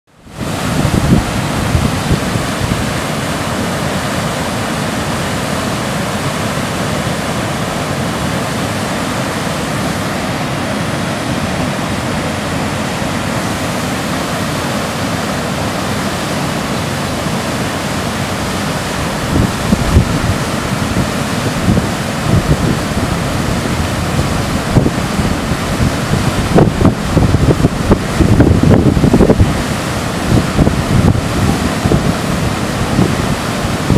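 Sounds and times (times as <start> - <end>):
waterfall rushing: 0.1 - 33.9
wind buffeting microphone: 0.3 - 3.9, 18.8 - 33.9.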